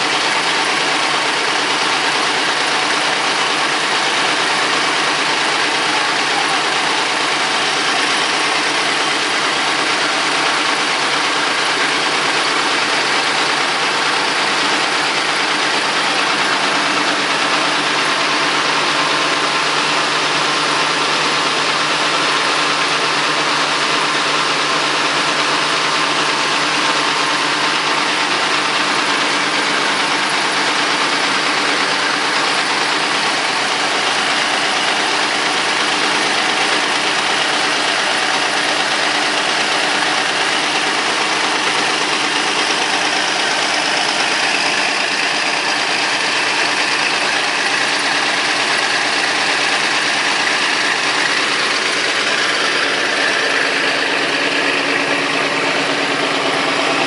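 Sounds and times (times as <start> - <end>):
diesel engine running: 0.0 - 57.0.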